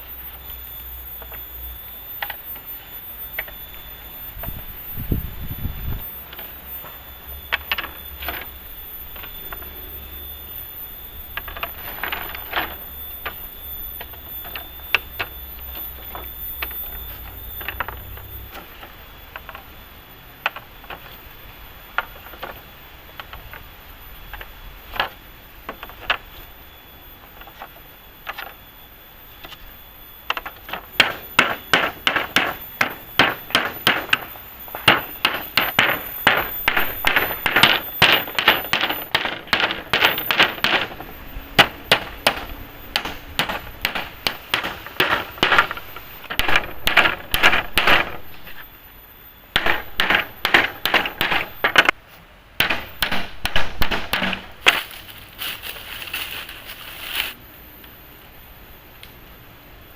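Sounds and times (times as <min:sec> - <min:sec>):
hand tool striking wood: 0:30.3 - 0:41.0, 0:41.6 - 0:48.6, 0:49.6 - 0:52.0, 0:52.6 - 0:55.0.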